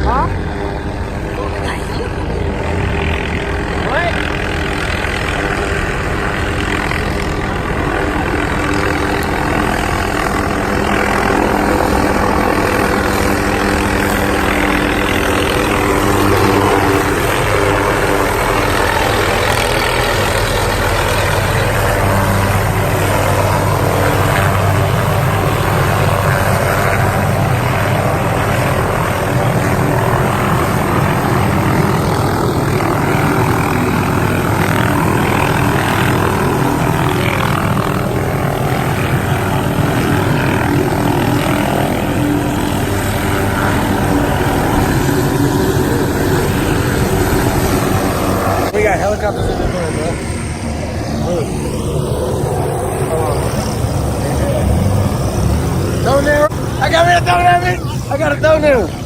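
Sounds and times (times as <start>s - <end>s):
helicopter engine and rotor drone: 0.0s - 59.0s.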